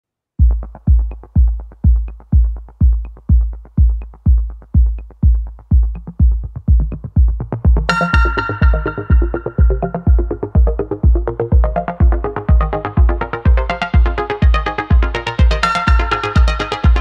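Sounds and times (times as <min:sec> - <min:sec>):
drum machine kick drum: 0:00.4 - 0:17.0
synthesizer chord: 0:07.8 - 0:17.0.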